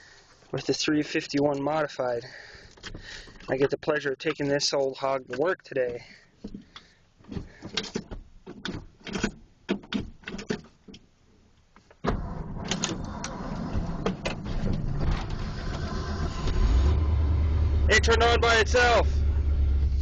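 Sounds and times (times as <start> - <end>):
truck engine starting and running: 12.0 - 20.0.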